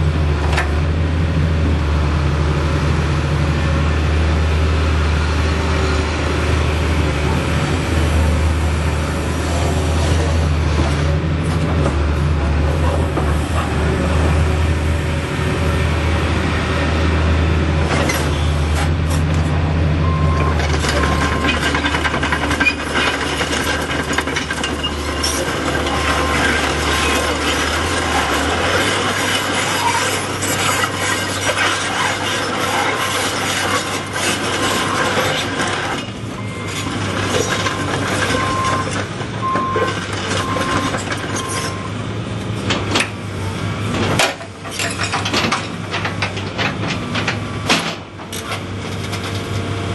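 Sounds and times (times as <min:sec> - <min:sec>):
excavator diesel engine hum: 0:00.0 - 0:49.9
scraping and clattering machine: 0:17.8 - 0:49.9.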